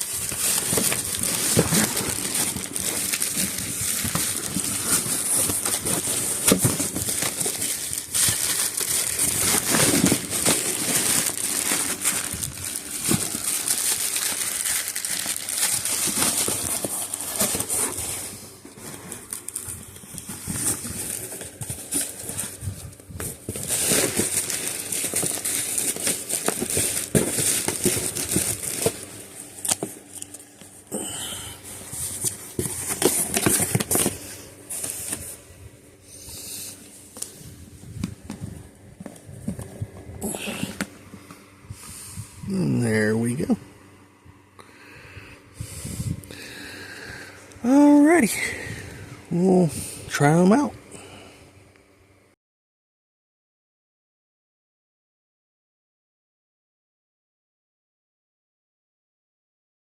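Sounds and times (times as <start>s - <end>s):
packaging crinkling and rustling: 0.0s - 35.4s, 36.1s - 41.4s.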